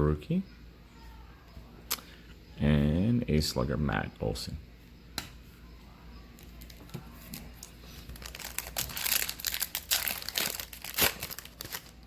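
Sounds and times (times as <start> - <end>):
wrapper crinkling: 6.4 - 12.0.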